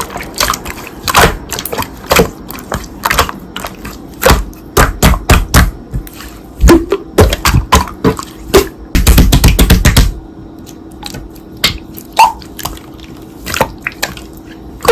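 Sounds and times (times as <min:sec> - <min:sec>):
slime squishing with wet pops: 0:00.0 - 0:10.1.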